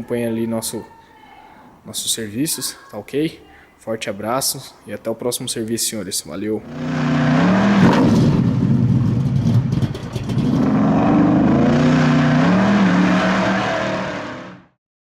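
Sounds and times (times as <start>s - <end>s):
car engine revving: 6.6s - 14.7s.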